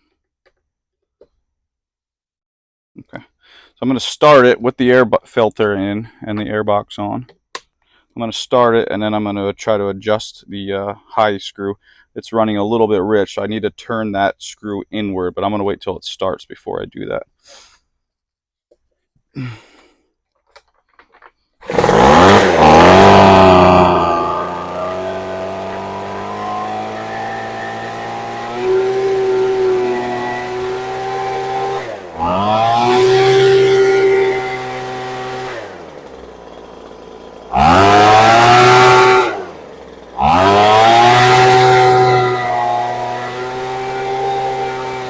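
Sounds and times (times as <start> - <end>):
leaf blower engine revving: 21.6 - 45.0.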